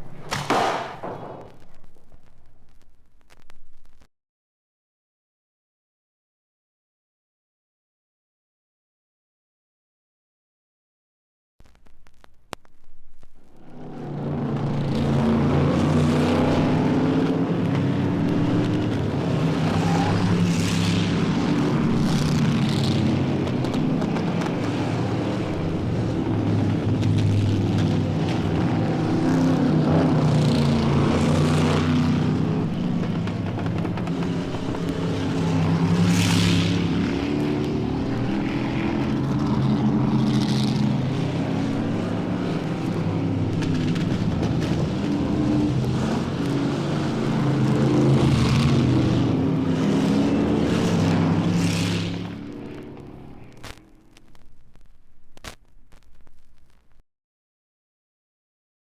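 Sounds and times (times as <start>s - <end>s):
engine drone: 13.1s - 54.4s.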